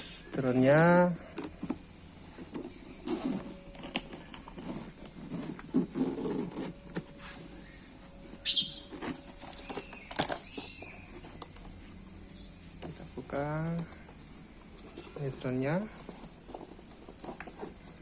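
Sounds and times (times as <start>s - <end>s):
scratchy scrapes: 1.9s - 12.0s.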